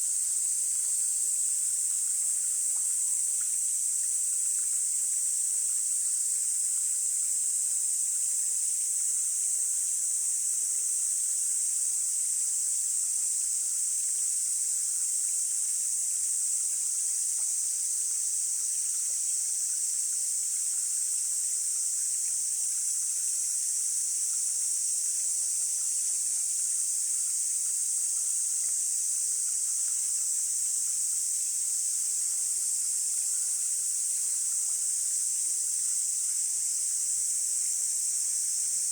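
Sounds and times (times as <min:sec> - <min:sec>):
insects droning: 0:17.2 - 0:38.9.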